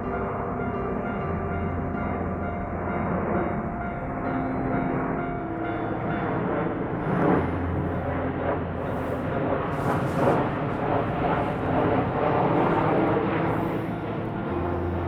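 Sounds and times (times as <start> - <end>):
train wheels rumbling on rails: 5.8 - 15.0.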